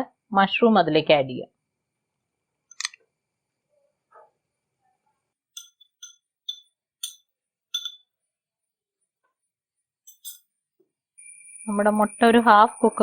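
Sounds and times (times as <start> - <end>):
spoon clinking against dish: 5.6 - 8.1, 10.1 - 10.4.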